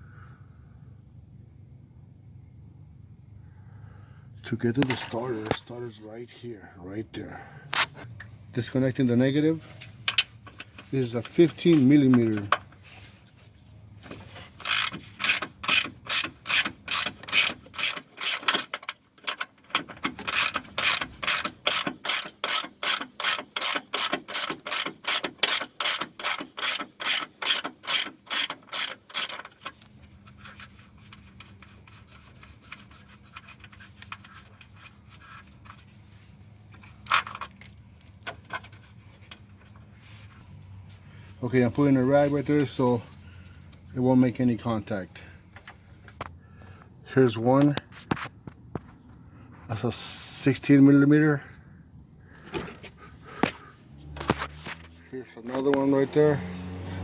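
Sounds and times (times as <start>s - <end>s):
faint handling sounds: 4.4s - 15.3s, 29.2s - 56.0s
ratchet wrench clicking: 14.6s - 35.4s.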